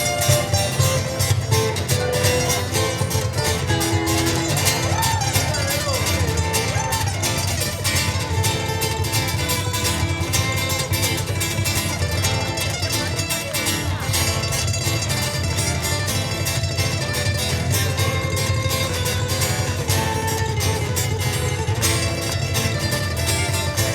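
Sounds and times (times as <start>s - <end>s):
ukulele plucking and strumming: 0.0s - 23.9s.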